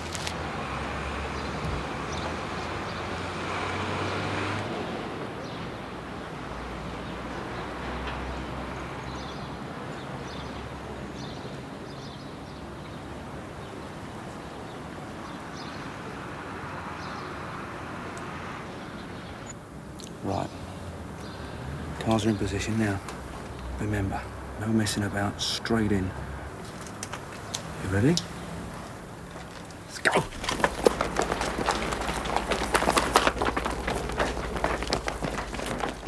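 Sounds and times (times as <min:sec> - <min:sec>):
vehicle engine hum: 0:17.9 - 0:36.0.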